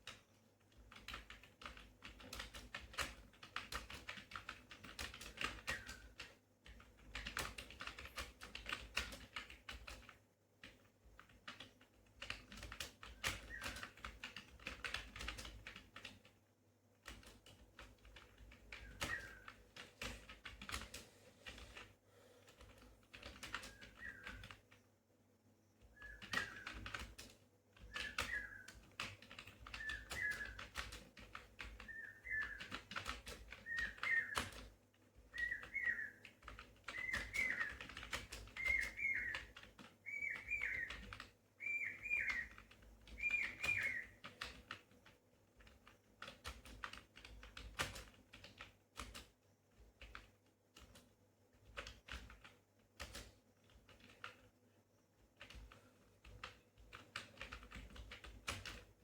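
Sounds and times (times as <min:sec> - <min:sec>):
computer keyboard typing: 0:00.0 - 0:21.9, 0:22.5 - 0:24.9, 0:25.8 - 0:59.0
bird whistled call: 0:26.0 - 0:26.7, 0:27.9 - 0:28.7, 0:29.8 - 0:30.6, 0:31.9 - 0:32.6, 0:33.6 - 0:34.5, 0:35.3 - 0:36.2, 0:36.9 - 0:37.8, 0:38.6 - 0:41.0, 0:41.6 - 0:42.6, 0:43.2 - 0:44.2.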